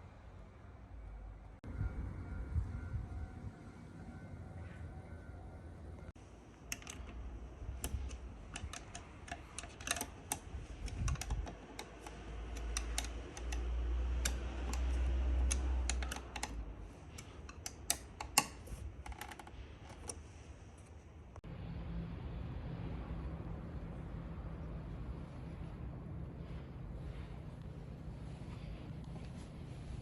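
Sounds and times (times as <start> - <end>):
light irregular clicks and taps: 6.6 - 20.2
low rumble: 21.4 - 30.0.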